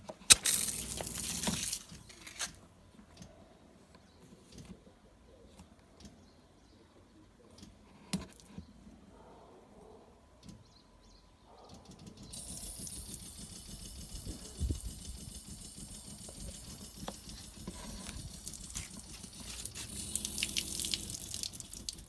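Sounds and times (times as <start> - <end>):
water shower spraying: 12.4 - 22.0.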